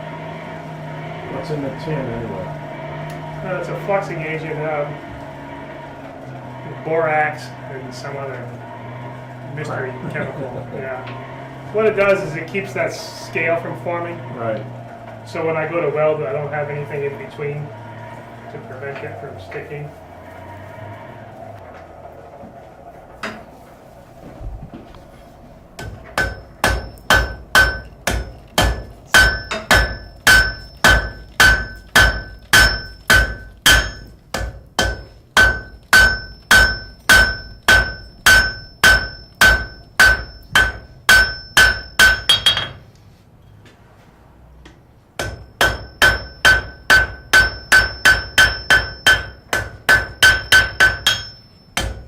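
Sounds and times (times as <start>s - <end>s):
hammer striking steel on anvil: 25.8s - 42.8s, 45.2s - 52.0s.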